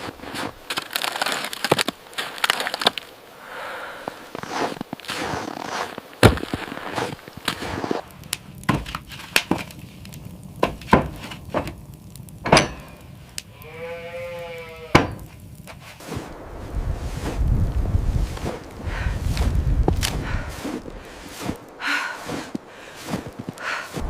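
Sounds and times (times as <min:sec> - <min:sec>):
sharp cracks and snaps: 0:00.1 - 0:03.2, 0:04.1 - 0:16.4, 0:18.3 - 0:24.0
reindeer calf bleating: 0:13.5 - 0:15.1.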